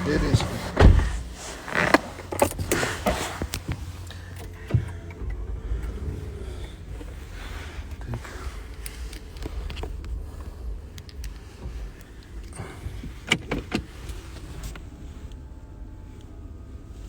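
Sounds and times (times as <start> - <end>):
low rumble of car: 0.0 - 17.0.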